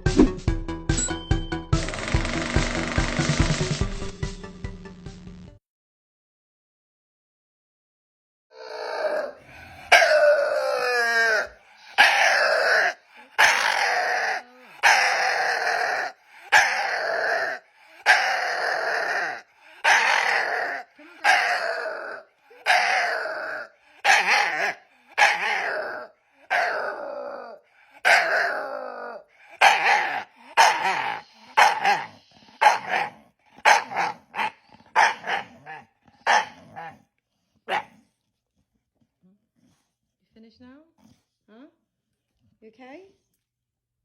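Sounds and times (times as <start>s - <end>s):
dog barking: 12.0s - 12.4s, 13.4s - 13.8s, 16.5s - 16.9s, 19.8s - 20.3s, 21.2s - 21.6s, 24.0s - 25.7s, 28.0s - 28.4s, 29.6s - 37.0s, 37.7s - 38.0s.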